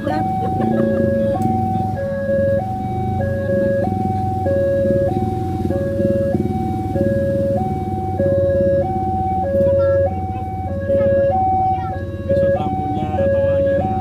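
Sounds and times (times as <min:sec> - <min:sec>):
level crossing two-tone alarm: 0:00.0 - 0:14.0.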